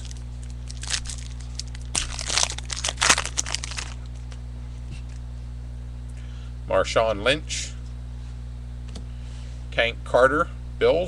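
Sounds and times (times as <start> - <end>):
plastic packaging crinkling: 0.0 - 4.4
steady electrical hum: 0.0 - 11.0.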